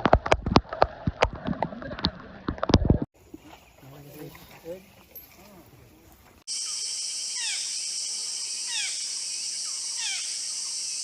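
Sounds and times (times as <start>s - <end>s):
high-pitched insect chorus: 6.5s - 11.0s.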